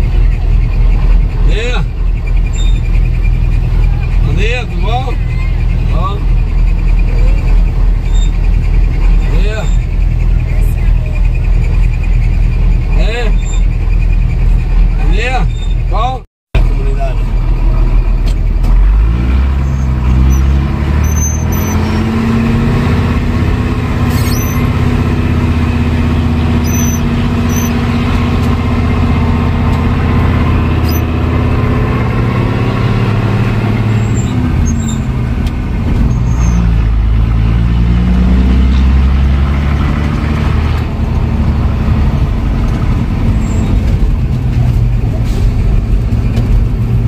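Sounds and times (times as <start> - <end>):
truck engine rumbling: 0.0 - 47.0.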